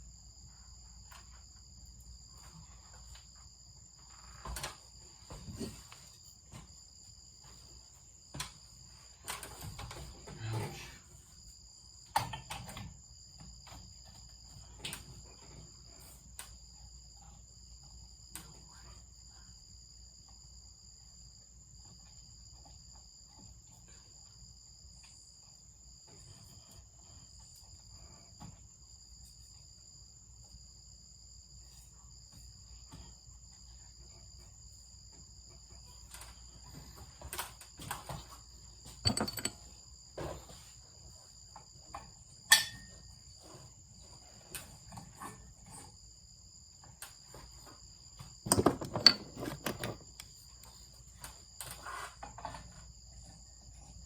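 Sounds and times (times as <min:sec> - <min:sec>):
knocks and clacks of handling: 0:48.3 - 0:50.4.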